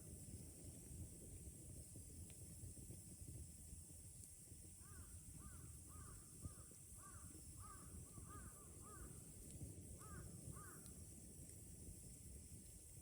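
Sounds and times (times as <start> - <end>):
crow cawing: 4.8 - 6.2, 7.0 - 9.1, 10.0 - 10.9.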